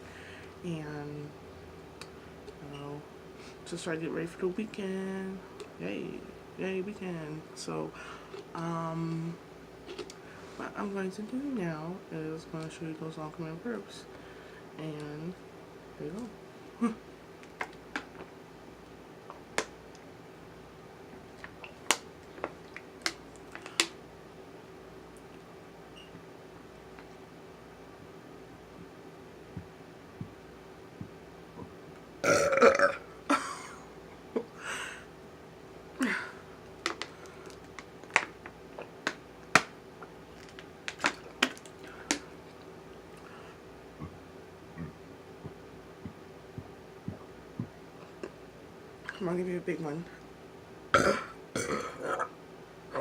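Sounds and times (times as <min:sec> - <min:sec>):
faint steady hum: 0:00.0 - 0:53.0
sharp clicks and smacks: 0:36.8 - 0:39.8.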